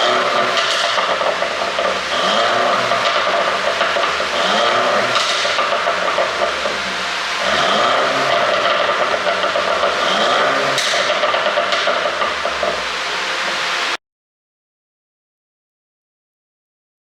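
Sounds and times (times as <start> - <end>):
exhaust pops: 0.0 - 13.6
car engine revving: 0.0 - 14.0.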